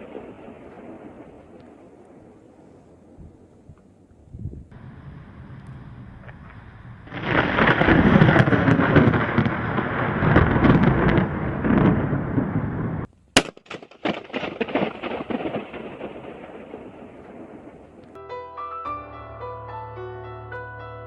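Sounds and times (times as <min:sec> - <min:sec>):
loud rolling rumble: 0:04.5 - 0:13.1
sharp crack: 0:05.5 - 0:18.2
crackling pops: 0:05.6 - 0:18.2.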